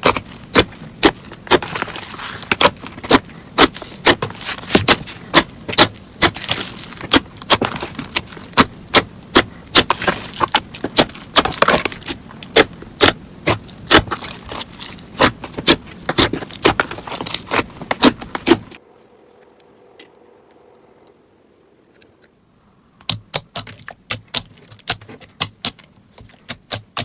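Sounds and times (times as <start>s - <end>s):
slime popping and crackling: 0.0s - 18.8s.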